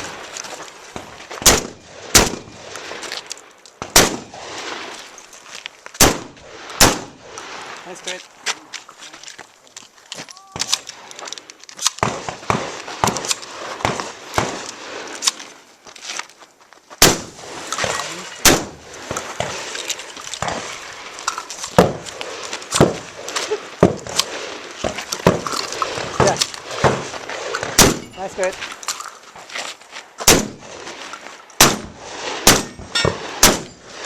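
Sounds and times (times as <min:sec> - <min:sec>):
shotgun shots: 0:01.4 - 0:03.0, 0:03.8 - 0:05.0, 0:06.0 - 0:07.7, 0:12.0 - 0:15.1, 0:17.0 - 0:19.8, 0:21.7 - 0:28.5, 0:30.2 - 0:30.9, 0:31.6 - 0:34.0.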